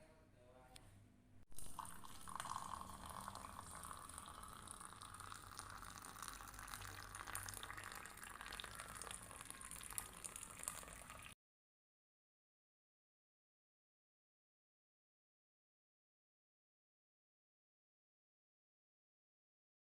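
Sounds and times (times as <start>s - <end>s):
pot bubbling and popping: 1.5s - 11.4s.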